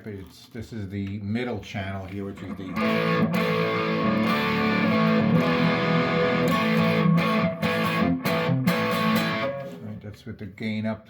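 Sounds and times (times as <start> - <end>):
overdriven electric guitar chords: 2.6 - 9.9.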